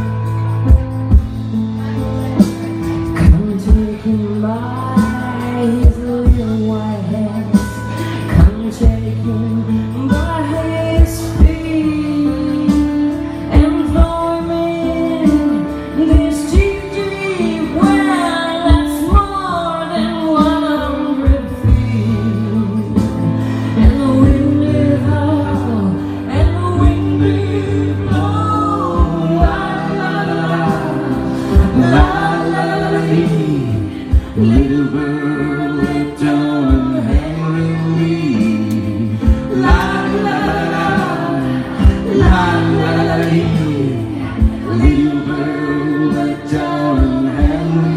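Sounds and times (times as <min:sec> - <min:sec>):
acoustic guitar: 0:00.0 - 0:47.9
person singing: 0:02.0 - 0:47.9
low beats: 0:26.4 - 0:47.9.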